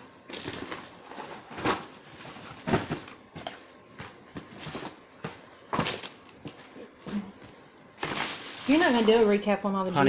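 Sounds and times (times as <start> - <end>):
packaging handling noise: 0.0 - 9.5
boxes knocking when set down: 0.4 - 6.2.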